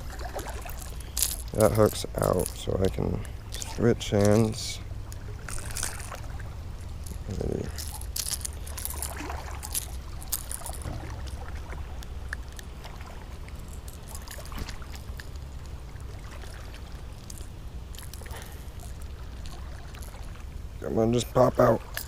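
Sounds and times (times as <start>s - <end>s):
small water splashes: 0.0s - 22.0s
steady low rumble: 0.0s - 22.0s
handling clicks: 0.7s - 4.8s, 7.0s - 10.9s.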